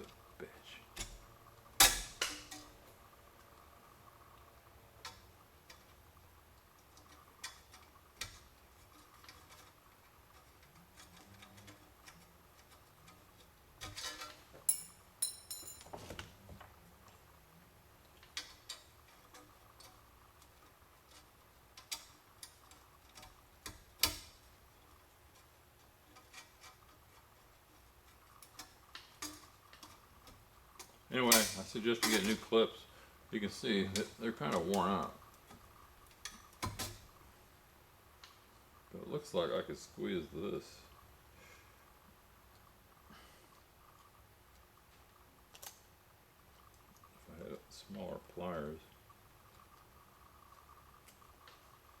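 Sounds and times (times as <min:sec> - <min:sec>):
metal clinks with ringing: 0:14.7 - 0:16.0.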